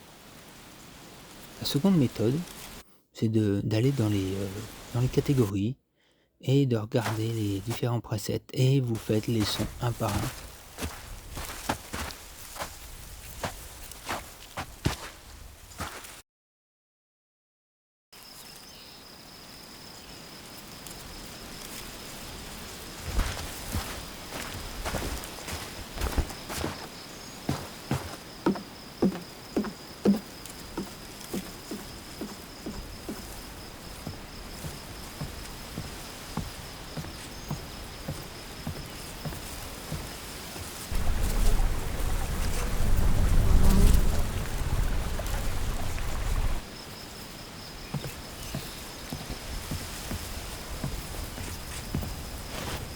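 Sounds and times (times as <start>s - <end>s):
soft outdoor hiss: 0.0s - 5.7s, 18.2s - 52.9s
insect trill: 8.9s - 14.2s, 18.2s - 52.9s
footstep-like knock: 23.1s - 26.9s, 27.5s - 33.4s
low rumble: 40.9s - 46.6s.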